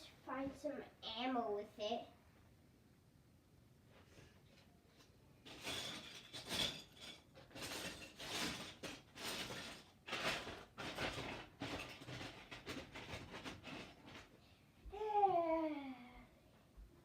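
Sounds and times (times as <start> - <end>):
rummaging rustles and clatters: 4.6 - 14.4.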